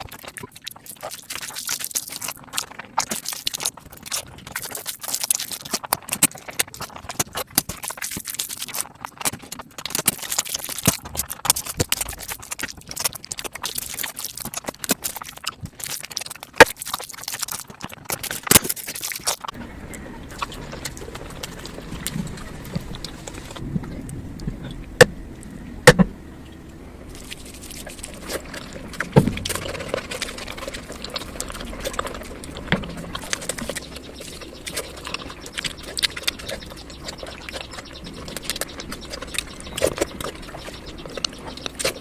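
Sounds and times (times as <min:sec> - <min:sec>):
sped-up chewing and lip smacks: 0:00.0 - 0:25.6, 0:27.1 - 0:42.0
steady low hum: 0:18.2 - 0:42.0.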